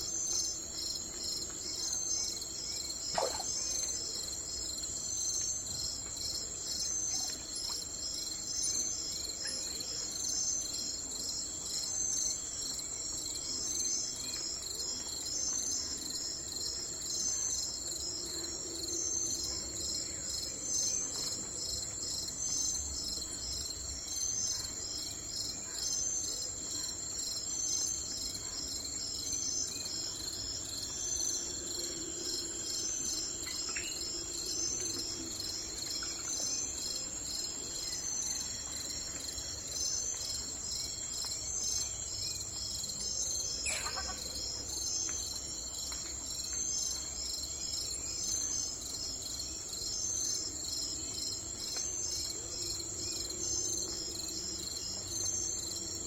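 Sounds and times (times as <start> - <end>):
crickets trilling: 0.0 - 56.0.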